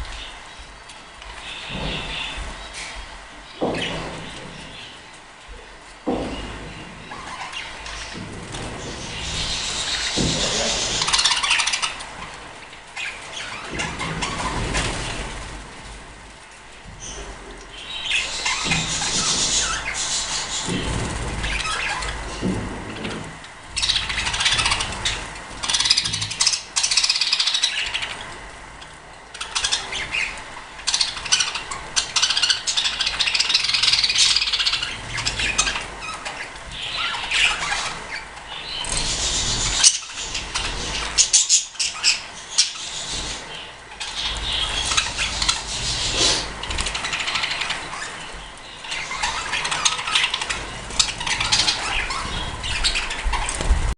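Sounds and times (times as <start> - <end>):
budgerigars chattering: 6.1 - 12.2, 17.0 - 23.2, 23.8 - 28.3, 29.4 - 53.6.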